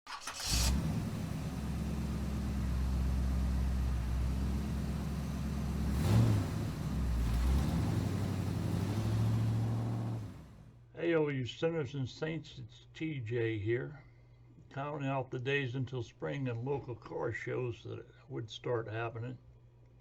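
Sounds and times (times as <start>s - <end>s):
car engine running: 0.3s - 10.7s.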